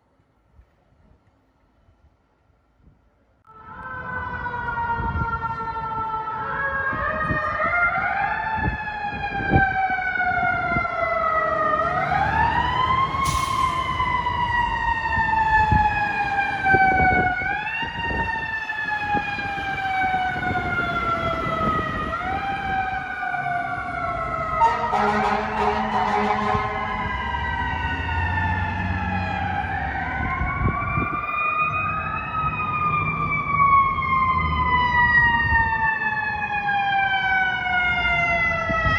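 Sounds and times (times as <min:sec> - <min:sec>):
fire truck sirens wailing: 0:03.5 - 0:38.9
truck engines rumbling: 0:09.1 - 0:38.9
air horn blast: 0:24.6 - 0:27.3.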